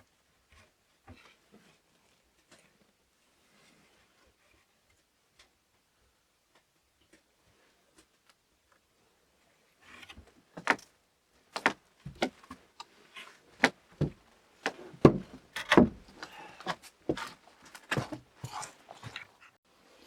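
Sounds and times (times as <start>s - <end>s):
irregular knocks and clunks: 13.6s - 16.2s.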